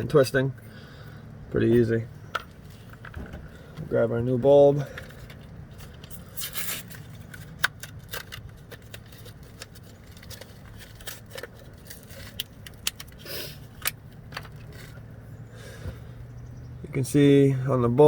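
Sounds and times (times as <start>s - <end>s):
low steady hum: 0.0s - 18.0s
bulb handling clicks and rustles: 1.6s - 15.2s.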